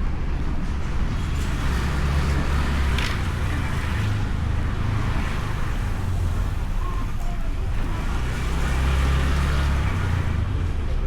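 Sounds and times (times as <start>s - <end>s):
road traffic: 0.0s - 11.0s
scooter riding rumble: 0.0s - 11.0s.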